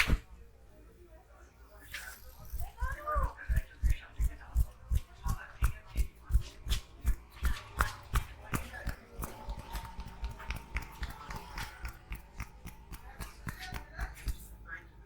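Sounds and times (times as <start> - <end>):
hands tapping during massage: 3.2 - 14.5.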